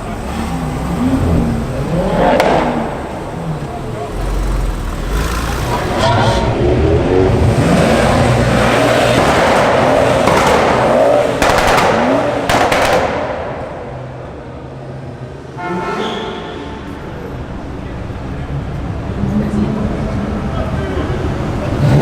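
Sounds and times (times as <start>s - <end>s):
car engine revving: 0.0s - 15.4s, 18.9s - 22.0s
sharp cracks: 9.2s - 13.8s
car horn toot: 15.5s - 16.9s.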